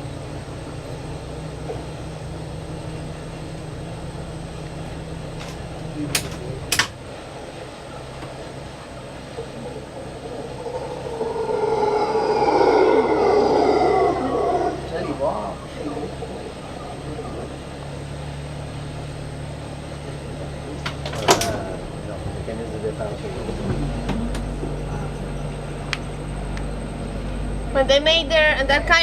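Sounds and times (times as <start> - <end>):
low hum: 0.0 - 29.0
howler monkeys roaring: 7.4 - 27.8.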